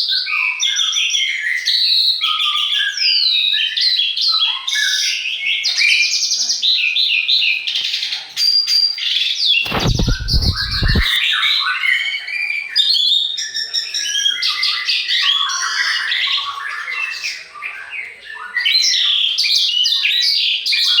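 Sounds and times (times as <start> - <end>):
low thudding noise: 9.7 - 11.2.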